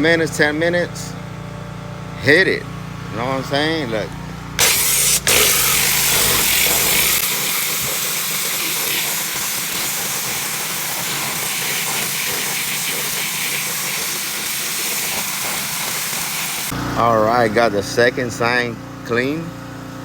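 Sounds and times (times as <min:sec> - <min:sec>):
pressure washer water jet hissing: 0:04.6 - 0:16.7.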